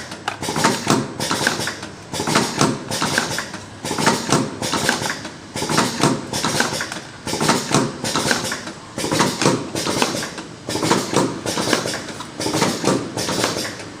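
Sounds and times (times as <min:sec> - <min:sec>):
cartoning machine clattering: 0:00.0 - 0:14.0.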